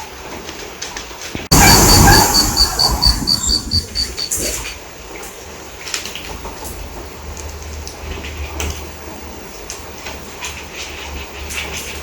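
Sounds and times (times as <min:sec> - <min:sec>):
low rumble: 0:01.5 - 0:04.8.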